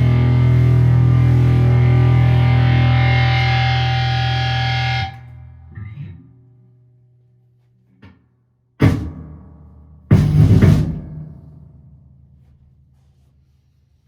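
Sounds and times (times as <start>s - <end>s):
distorted electric guitar chord: 0.0s - 6.2s.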